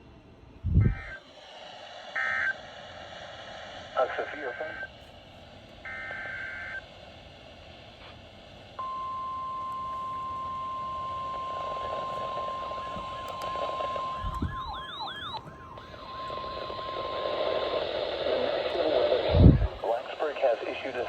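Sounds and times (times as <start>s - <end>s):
siren yelping: 0.7s - 1.2s, 8.8s - 18.8s
steady alarm tone: 8.8s - 19.8s.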